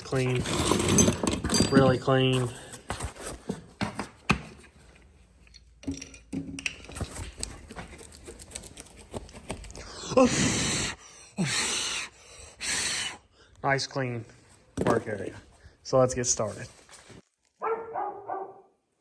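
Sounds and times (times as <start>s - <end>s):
man breathing out hard: 9.8s - 13.5s.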